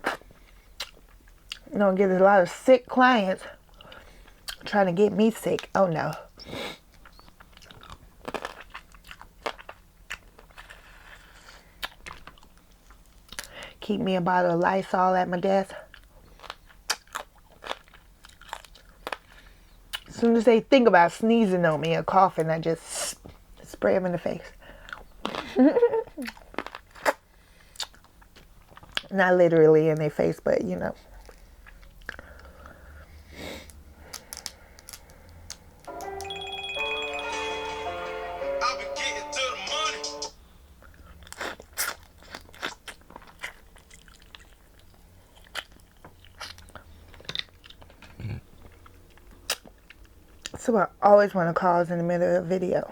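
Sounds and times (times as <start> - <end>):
chewing crab shell: 6.3 - 13.5, 15.8 - 20.1, 31.1 - 32.9, 33.6 - 35.9, 40.9 - 50.5
background music: 35.8 - 40.4.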